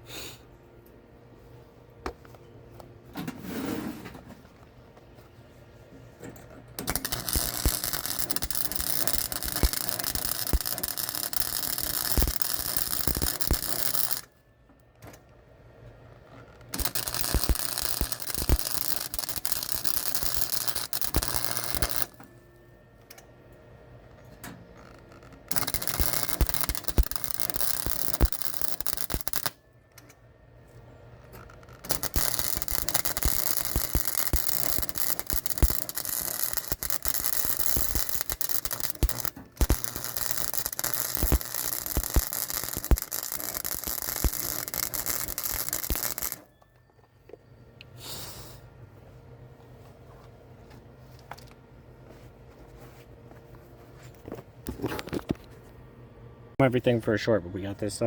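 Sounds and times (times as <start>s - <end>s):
welding arc crackling hiss: 6.8s - 14.3s, 16.8s - 22.2s, 25.5s - 29.6s, 31.9s - 46.4s.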